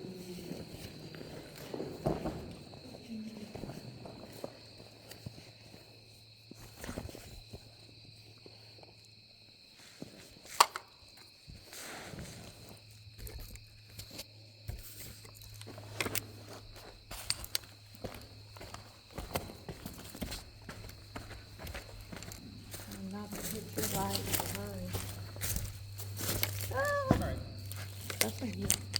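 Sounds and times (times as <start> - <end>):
faint insect drone: 0.0 - 28.9
footsteps on forest ground: 14.6 - 28.9.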